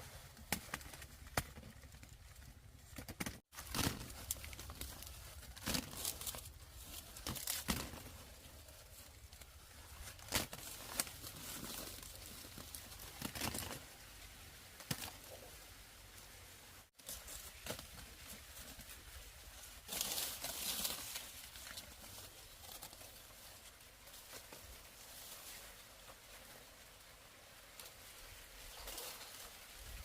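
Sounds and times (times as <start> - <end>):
dry plants rustling and crackling: 0.0 - 30.0
dry stems snapping: 3.0 - 8.2, 10.2 - 13.8.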